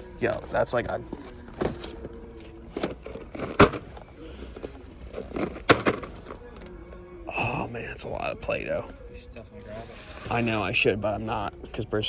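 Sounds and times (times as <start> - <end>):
faint voices: 0.0 - 12.0.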